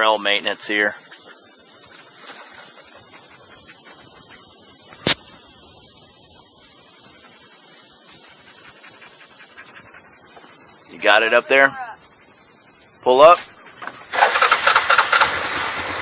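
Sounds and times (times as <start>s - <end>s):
high-pitched insect chorus: 0.0s - 16.0s
sharp snap: 5.0s - 5.3s.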